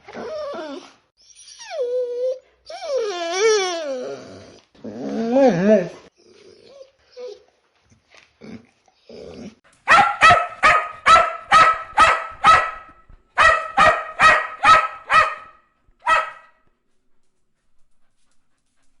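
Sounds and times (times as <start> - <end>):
dog barking: 9.8 - 16.6.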